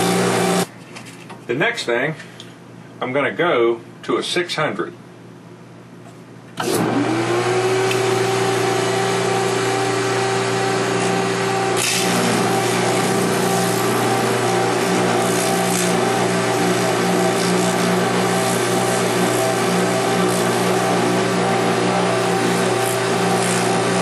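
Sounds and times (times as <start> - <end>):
polishing motor humming: 0.0 - 0.7, 6.6 - 24.0.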